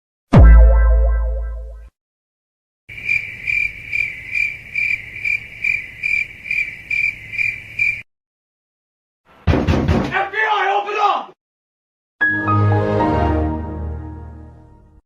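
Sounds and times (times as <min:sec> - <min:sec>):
crickets chirping: 0:02.9 - 0:08.1.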